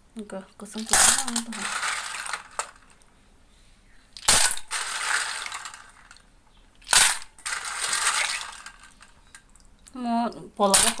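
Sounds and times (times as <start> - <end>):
utensils rattling and scraping: 0.7 - 3.0, 4.2 - 6.2, 6.8 - 9.4, 10.8 - 11.0
kitchen utensils knocking: 10.8 - 11.0.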